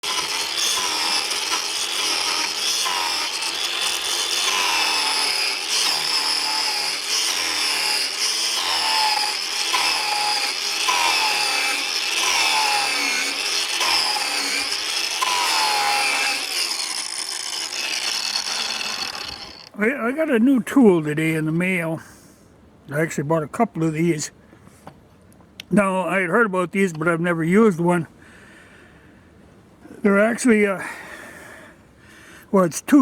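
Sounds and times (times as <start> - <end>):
angle grinder cutting wood: 0.0 - 19.8.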